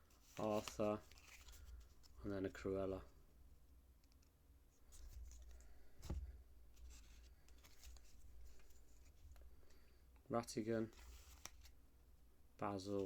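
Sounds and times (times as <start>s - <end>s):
cards and wrappers rustling: 0.1s - 3.1s, 6.8s - 9.8s, 10.7s - 11.8s.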